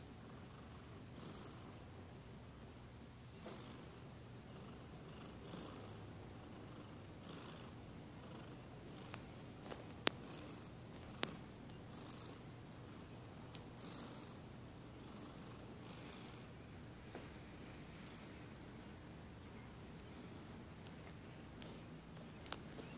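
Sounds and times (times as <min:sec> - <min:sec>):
cat snoring softly: 0:00.3 - 0:01.8, 0:03.4 - 0:09.3, 0:10.0 - 0:13.2, 0:13.8 - 0:16.6, 0:17.2 - 0:18.5.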